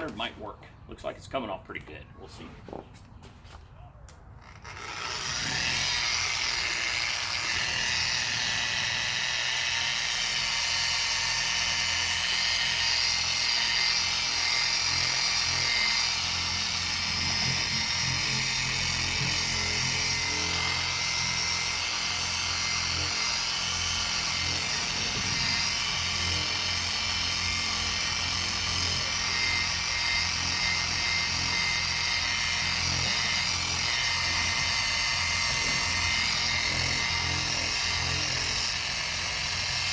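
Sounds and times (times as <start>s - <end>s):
power sander whining: 4.4s - 39.9s.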